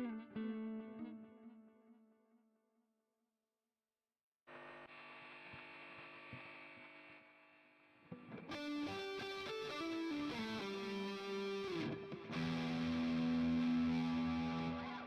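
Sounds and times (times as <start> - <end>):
electric guitar chord ringing: 0.0 - 1.5, 8.2 - 15.0
electric guitar single-note lick: 0.0 - 1.5, 8.2 - 15.0.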